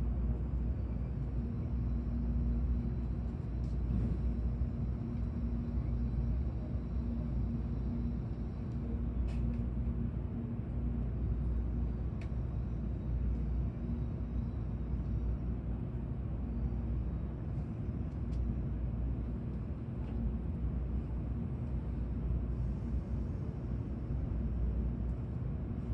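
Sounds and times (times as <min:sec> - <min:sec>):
train cabin low rumble: 0:00.0 - 0:25.9.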